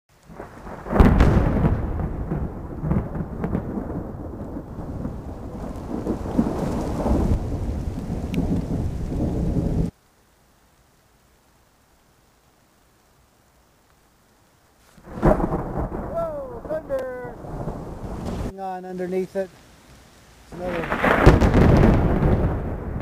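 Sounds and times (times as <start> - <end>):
rain: 0.1 - 23.0
thunder rumbling: 0.3 - 10.0, 15.0 - 18.6, 20.4 - 23.0.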